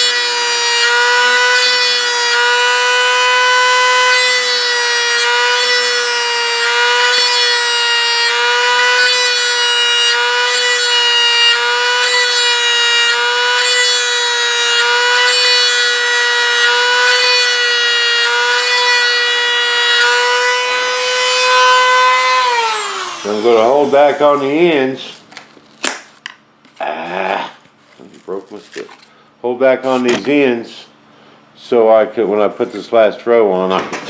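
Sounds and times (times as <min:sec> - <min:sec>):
rotary tool high whine: 0:00.0 - 0:25.0.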